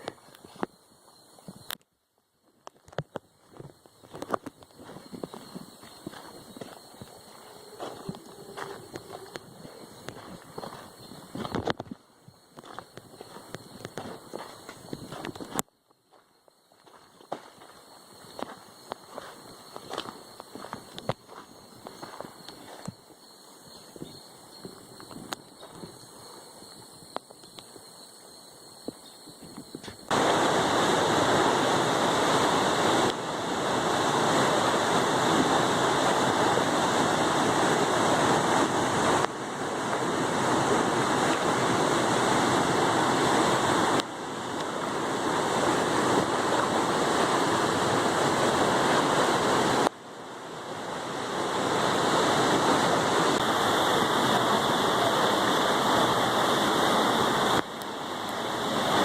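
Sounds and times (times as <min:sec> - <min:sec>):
faint high steady tones: 0:00.0 - 0:33.4
waterfall rushing: 0:04.1 - 0:11.7, 0:30.1 - 0:59.0.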